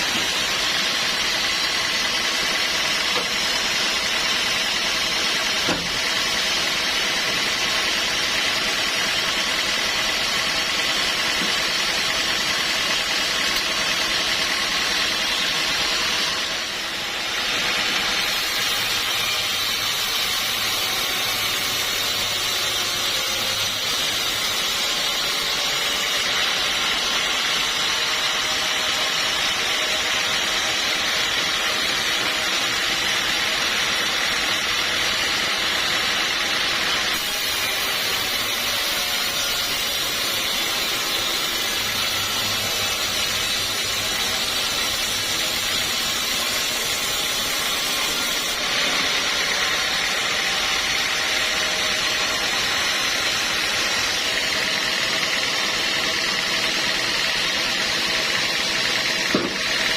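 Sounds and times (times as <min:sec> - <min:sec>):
sawmill machinery hissing: 0:00.0 - 0:59.9.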